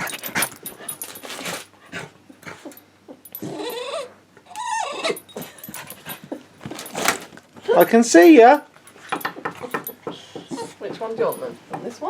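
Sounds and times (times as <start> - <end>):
dog whining: 0.0 - 6.5, 9.6 - 10.8.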